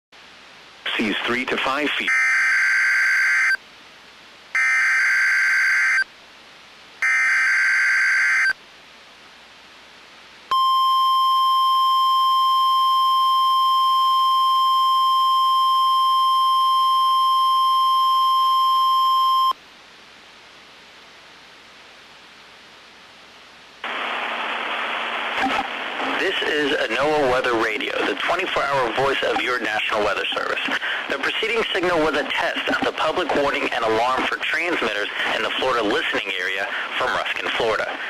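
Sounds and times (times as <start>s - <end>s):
faint static: 0.2s - 38.0s
steady warning alarm tone: 2.1s - 3.6s, 4.6s - 6.1s, 7.0s - 8.6s.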